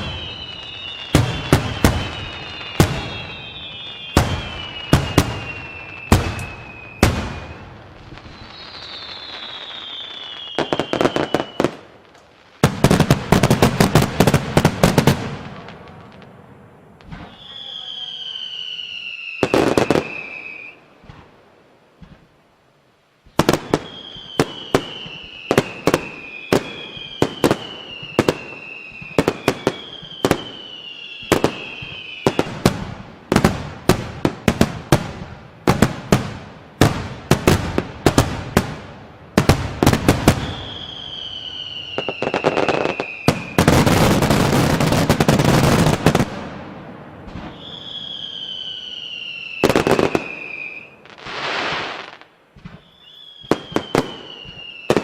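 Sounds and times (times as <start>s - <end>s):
falling firework whistles: 0.0s - 16.0s, 17.0s - 21.3s, 23.3s - 38.8s, 39.4s - 55.0s
fireworks banging: 0.0s - 22.4s, 23.2s - 55.0s
fireworks crackling: 0.0s - 55.0s.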